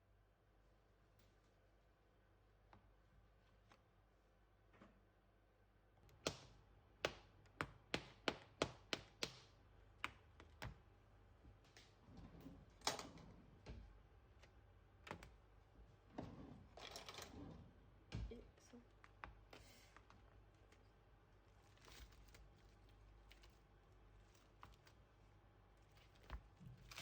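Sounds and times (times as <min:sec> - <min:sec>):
handling and rustling: 0:18.6 - 0:27.0.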